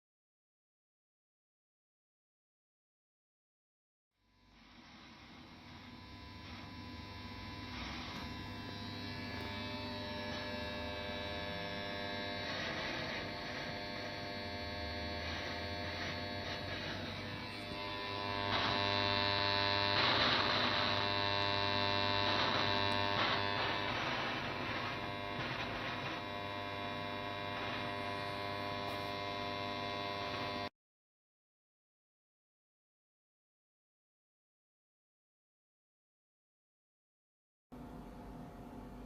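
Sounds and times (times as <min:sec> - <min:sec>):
radio interference buzz: 0:04.2 - 0:30.7.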